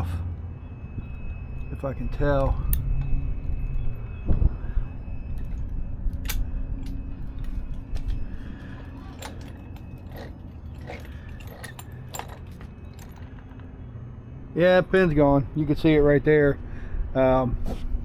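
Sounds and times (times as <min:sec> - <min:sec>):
low rumble: 0:00.0 - 0:14.0
small parts clicking and rattling: 0:08.8 - 0:13.8.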